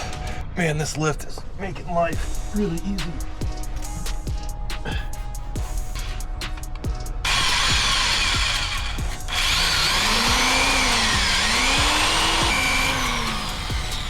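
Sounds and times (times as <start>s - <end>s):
power drill running: 7.3s - 14.0s.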